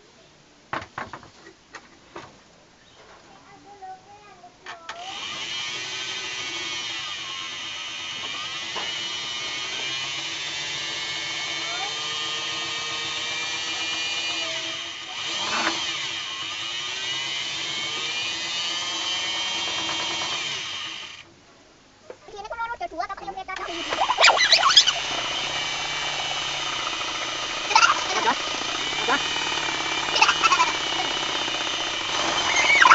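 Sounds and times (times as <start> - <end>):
scroll saw whirring: 4.9 - 21.3, 23.5 - 32.9.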